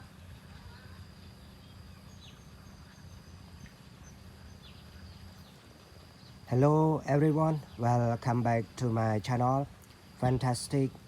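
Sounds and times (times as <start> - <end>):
faint chirps: 0.0 - 8.7
low steady hum: 0.0 - 11.0.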